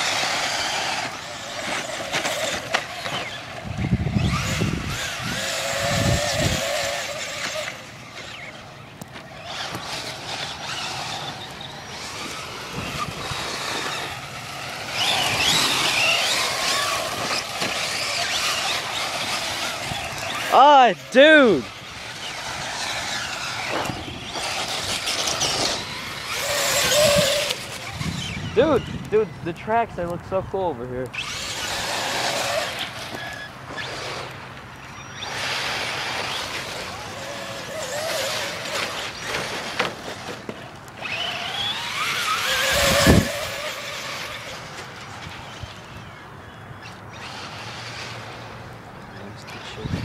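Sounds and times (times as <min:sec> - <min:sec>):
toy truck motors whining: 0:00.0 - 0:50.0
wheels scrabbling on dirt: 0:00.0 - 0:50.0
tyres hissing on dirt: 0:09.4 - 0:28.6.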